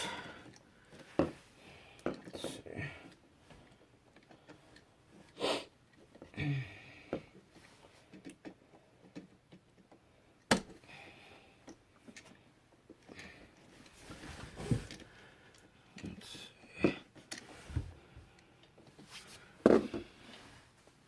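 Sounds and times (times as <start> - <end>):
wires clicking and rustling: 0.3 - 6.4, 7.3 - 10.8
person grunting: 2.5 - 3.0, 6.3 - 6.9
person sniffing: 5.4 - 5.7.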